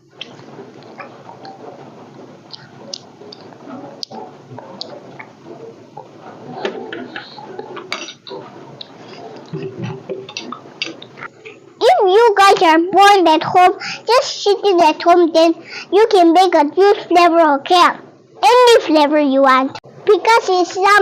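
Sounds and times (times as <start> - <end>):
dishes clinking: 2.5 - 11.6.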